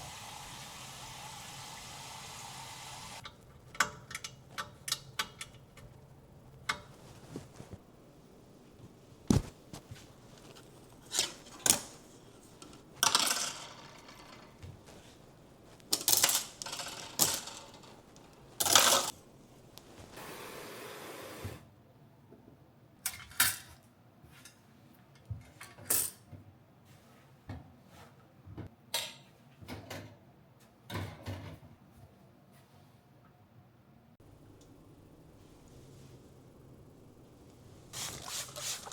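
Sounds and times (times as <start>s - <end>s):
steady hiss: 0.0s - 21.6s, 34.2s - 38.9s
hard items clinking and knocking: 9.2s - 19.2s.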